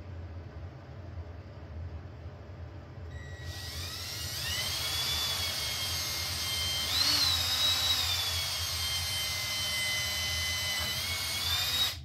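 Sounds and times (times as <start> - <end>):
hand drill boring through metal: 3.5 - 12.0.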